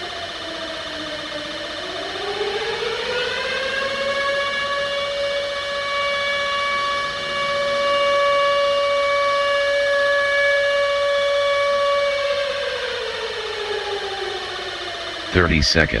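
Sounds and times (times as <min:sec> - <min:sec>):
warning siren wailing: 0:02.5 - 0:13.5.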